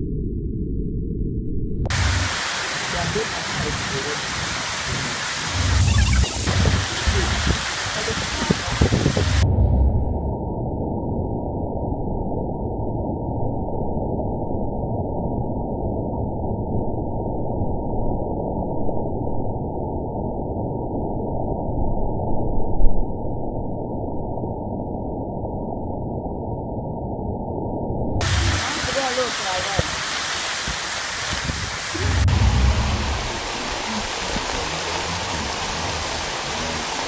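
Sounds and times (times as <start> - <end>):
slowed hail deep hiss: 1.9 - 5.8, 28.2 - 37.0.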